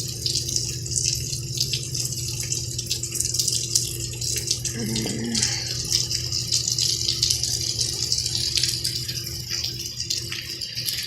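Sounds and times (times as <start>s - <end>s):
close drips and splashes: 0.0s - 11.0s
heavy rain pouring: 4.6s - 5.9s.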